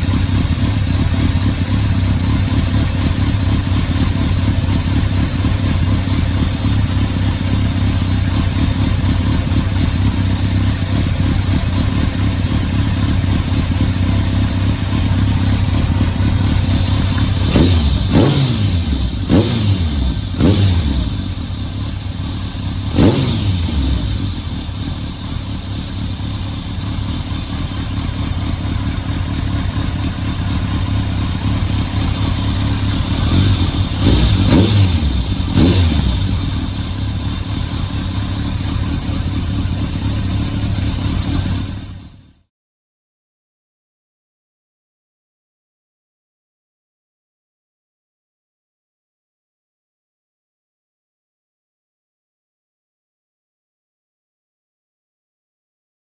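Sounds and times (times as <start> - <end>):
motorcycle engine idling: 0.0 - 42.5
engine revving on throttle blips: 17.2 - 21.4, 22.8 - 24.6, 33.0 - 36.6.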